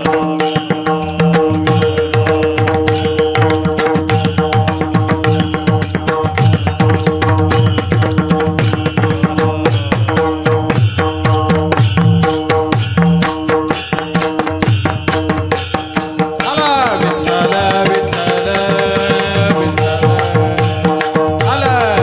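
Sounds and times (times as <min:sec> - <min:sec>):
drum rhythmic accompaniment: 0:00.0 - 0:22.0
person singing: 0:09.2 - 0:10.8, 0:16.4 - 0:22.0.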